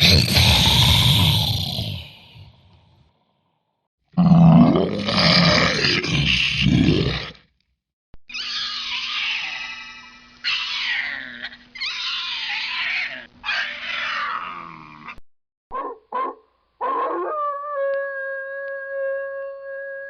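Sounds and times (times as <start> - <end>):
animal roaring: 0.0 - 2.7, 4.2 - 7.4.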